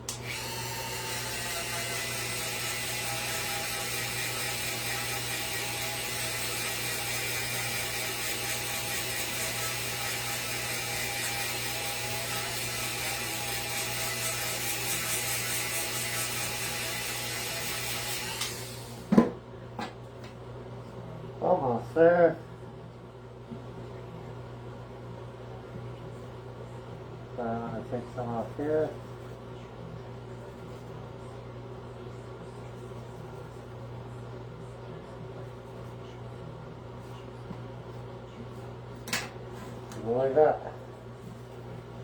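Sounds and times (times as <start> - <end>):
power tool sanding wood: 0.2 - 19.0.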